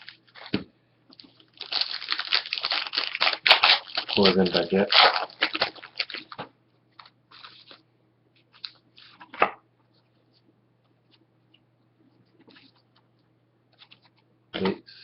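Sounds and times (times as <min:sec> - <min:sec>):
card wrapper crinkling: 0:00.0 - 0:07.8, 0:08.5 - 0:09.3
faint steady hum: 0:00.0 - 0:15.0.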